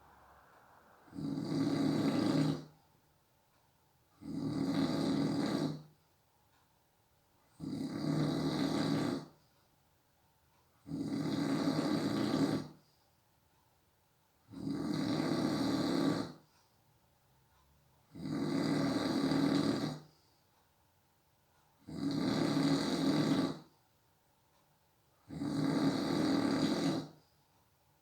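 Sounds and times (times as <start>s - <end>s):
person snoring: 0.0s - 2.8s, 4.2s - 5.9s, 7.6s - 9.3s, 10.9s - 12.8s, 14.5s - 16.4s, 18.1s - 20.1s, 21.8s - 23.7s, 25.3s - 27.2s.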